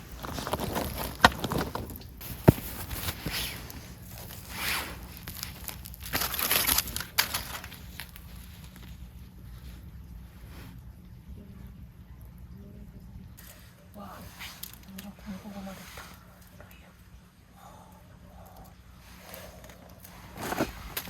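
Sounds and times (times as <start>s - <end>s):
rustling and handling: 0.0s - 10.9s, 13.4s - 16.9s, 19.0s - 21.0s.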